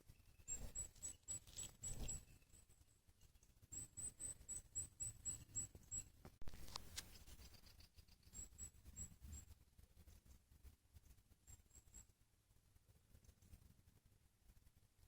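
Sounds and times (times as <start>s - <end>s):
small bird chirping: 0.0s - 10.4s, 11.0s - 12.2s
soft rustling: 6.3s - 7.7s.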